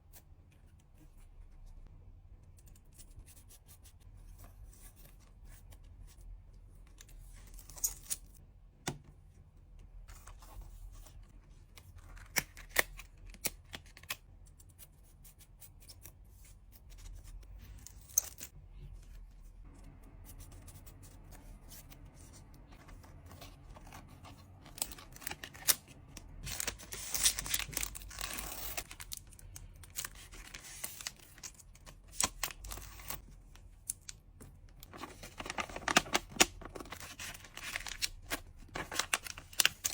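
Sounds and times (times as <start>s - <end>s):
hands packing paper and plastic: 22.7s - 33.2s, 34.8s - 39.9s
packaging tearing and rustling: 24.6s - 33.2s, 34.8s - 39.9s.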